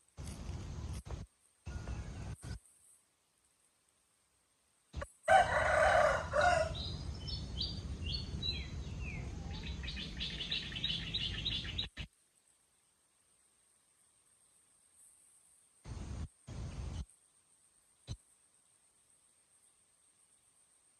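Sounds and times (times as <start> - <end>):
rooster crowing: 1.7 - 2.4, 5.2 - 6.9.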